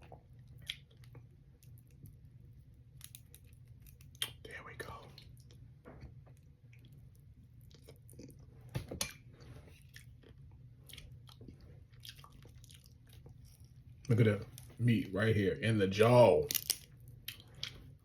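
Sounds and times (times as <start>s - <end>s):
person chewing food: 0.0s - 2.2s, 5.0s - 14.8s, 17.0s - 18.0s
food crunching: 6.4s - 14.7s.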